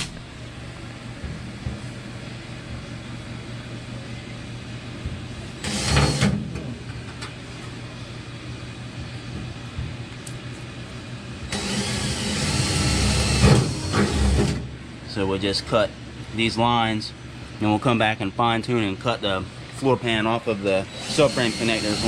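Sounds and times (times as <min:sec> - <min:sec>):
steady low hum: 0:00.0 - 0:22.0
power drill drilling metal: 0:05.6 - 0:06.3, 0:11.5 - 0:14.6, 0:20.9 - 0:22.0.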